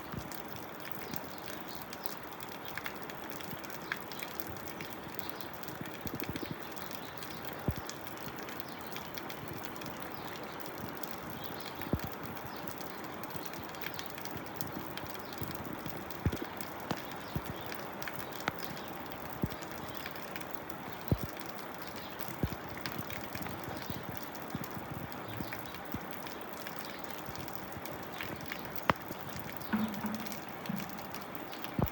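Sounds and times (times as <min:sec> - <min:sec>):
water splashing and dripping: 0:00.0 - 0:31.9
water plops: 0:28.8 - 0:31.9.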